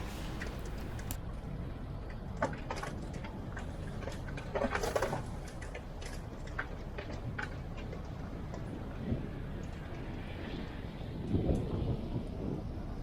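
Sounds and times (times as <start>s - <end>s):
car cabin road rumble: 0.0s - 1.2s
short rattle: 0.0s - 1.2s
small clicks and ticks: 0.0s - 1.2s, 2.1s - 8.8s.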